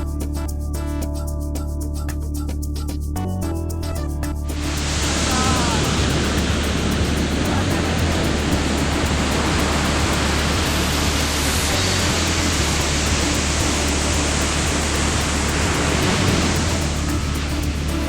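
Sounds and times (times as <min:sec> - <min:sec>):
constant low hum: 0:00.0 - 0:18.0
loud rushing noise: 0:04.5 - 0:18.0.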